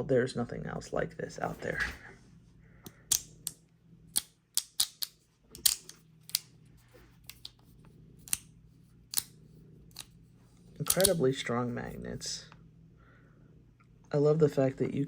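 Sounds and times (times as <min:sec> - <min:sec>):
magnets snapping together: 0:03.1 - 0:06.5, 0:09.1 - 0:09.3, 0:10.8 - 0:11.2.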